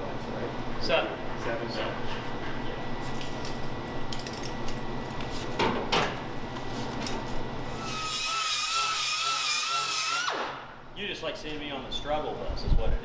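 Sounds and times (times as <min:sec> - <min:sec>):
steady low hum: 0:00.0 - 0:07.9.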